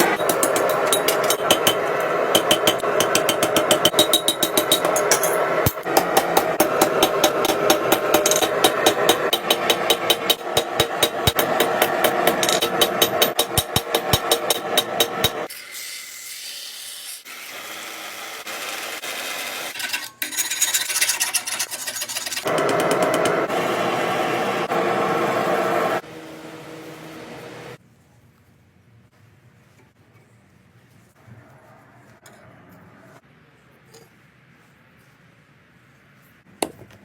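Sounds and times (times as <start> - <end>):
hammer blows on steel: 0.0 - 15.5.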